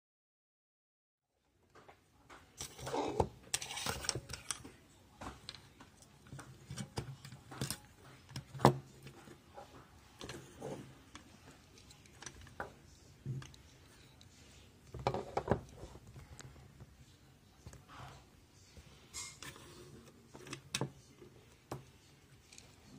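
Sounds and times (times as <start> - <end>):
small parts and tools clicking: 11.1 - 12.7.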